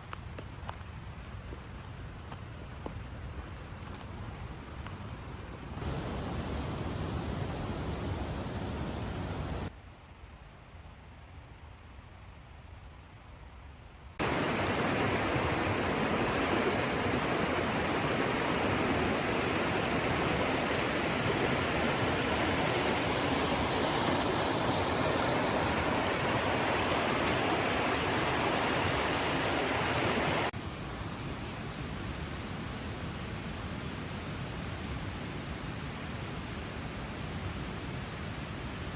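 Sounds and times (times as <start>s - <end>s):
waterfall rushing: 14.2s - 30.5s.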